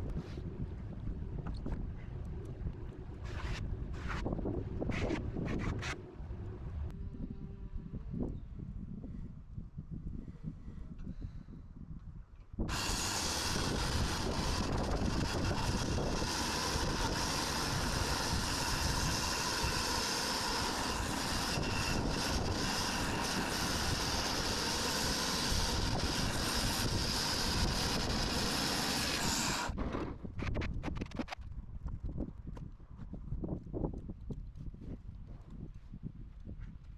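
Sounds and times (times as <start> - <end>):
sawmill blade cutting log: 12.7 - 29.8.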